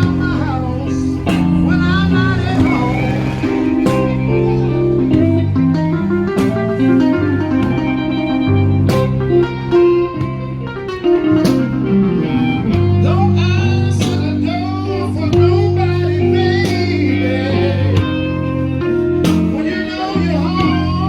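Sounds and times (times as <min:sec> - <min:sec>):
blues band playing: 0:00.0 - 0:21.0
keyboard: 0:00.0 - 0:21.0
lead guitar: 0:00.0 - 0:21.0
low bass notes: 0:00.0 - 0:21.0.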